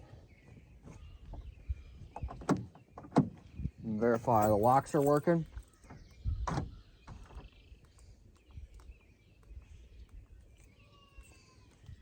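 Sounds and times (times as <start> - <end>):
faint small clicks: 7.4 - 12.0.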